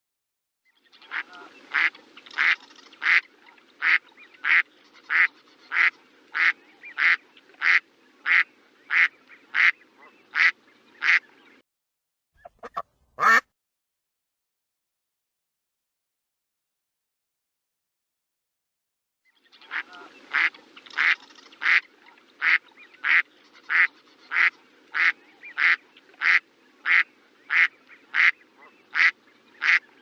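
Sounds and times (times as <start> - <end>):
faint low background noise: 0.7 - 11.6, 19.3 - 30.0
duck quacking: 1.1 - 11.2, 12.4 - 13.5, 19.7 - 29.8.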